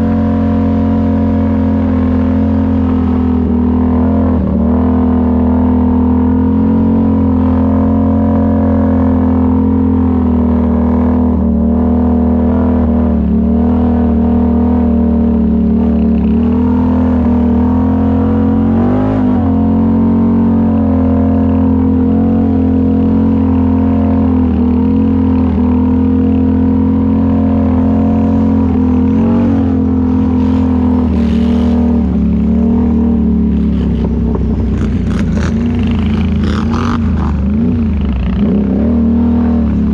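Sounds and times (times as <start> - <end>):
quad bike engine running: 0.0 - 39.9.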